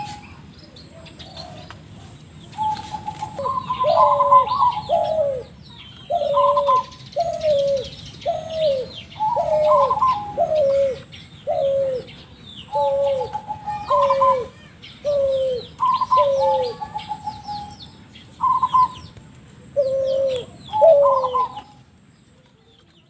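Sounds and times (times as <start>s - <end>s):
dove cooing: 0.0s - 21.9s
small birds chirping: 0.0s - 23.0s.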